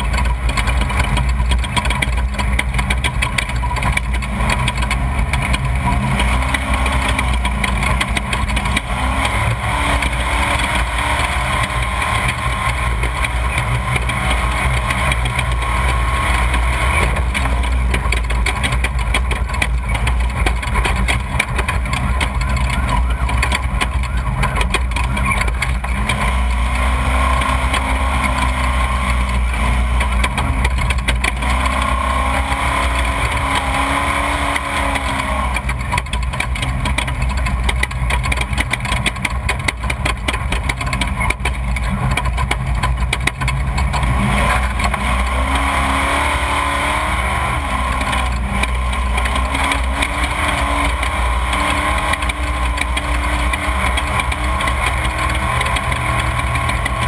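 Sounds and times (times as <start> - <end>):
race vehicle engine revving: 0.0 - 57.0
rattling and rushing noise: 0.0 - 57.0.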